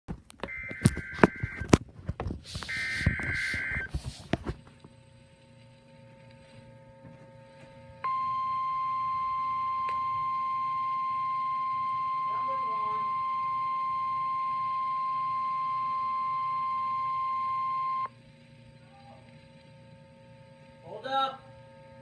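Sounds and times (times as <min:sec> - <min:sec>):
piercing warning alarm tone: 0:00.4 - 0:01.8, 0:02.6 - 0:04.0, 0:06.7 - 0:18.2.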